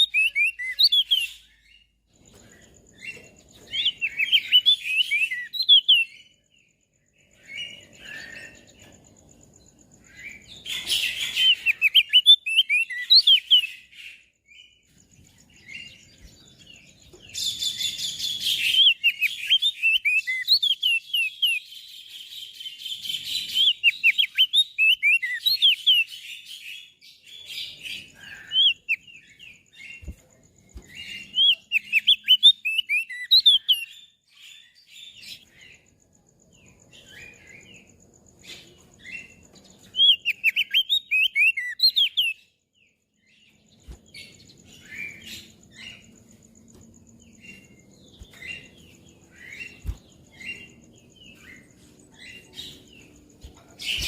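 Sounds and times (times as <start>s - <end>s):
bird chirping and trilling: 0.0s - 35.8s, 36.7s - 42.6s, 43.2s - 54.0s.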